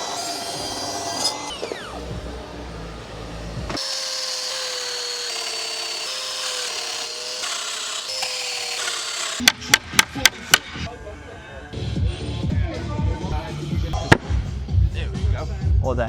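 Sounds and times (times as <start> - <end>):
power tool working wood: 0.0 - 10.9.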